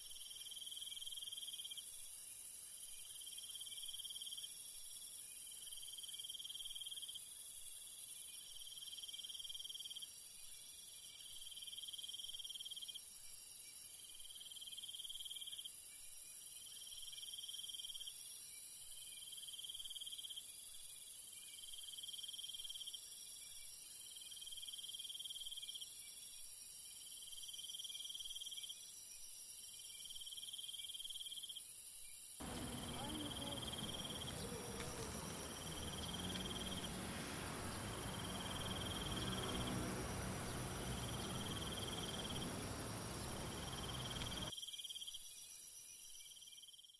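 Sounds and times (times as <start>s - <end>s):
broad hiss: 32.4s - 44.5s
insect buzzing call: 32.4s - 44.5s
crickets chorus: 32.4s - 46.5s.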